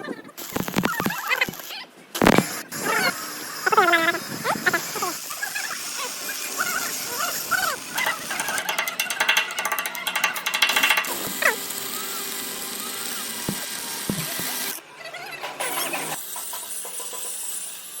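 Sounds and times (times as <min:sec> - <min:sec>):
metal tool crackling: 0:00.4 - 0:14.8
metal tool hissing: 0:02.6 - 0:14.8.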